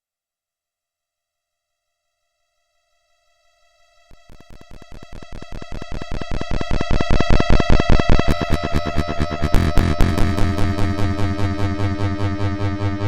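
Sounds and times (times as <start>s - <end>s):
electronic synthesizer music: 4.1s - 13.0s
low bass notes: 4.3s - 13.0s.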